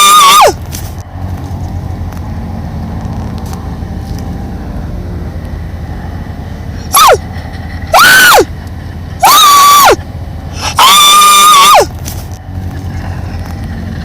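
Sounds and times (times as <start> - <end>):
animal crying out: 0.0 - 0.6, 6.9 - 7.2, 7.9 - 8.5, 9.2 - 10.0, 10.6 - 11.9.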